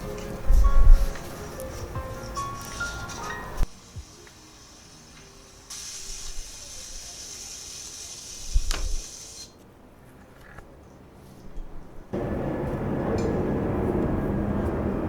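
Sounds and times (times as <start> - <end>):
steady hiss: 0.0 - 9.7.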